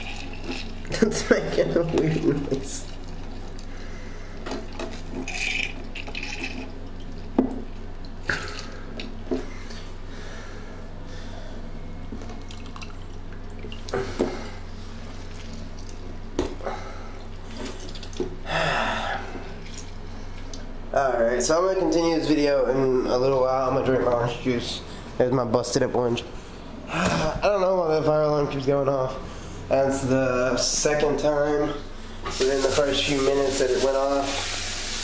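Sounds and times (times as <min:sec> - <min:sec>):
juice dripping and trickling: 0:00.0 - 0:09.3, 0:12.2 - 0:14.4, 0:15.0 - 0:18.5, 0:19.4 - 0:20.6
steady low hum: 0:00.0 - 0:34.1.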